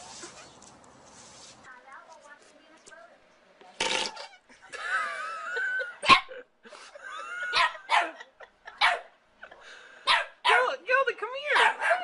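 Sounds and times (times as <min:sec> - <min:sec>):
dog barking: 0:07.5 - 0:08.2, 0:08.8 - 0:09.2, 0:10.1 - 0:10.7, 0:11.5 - 0:12.0.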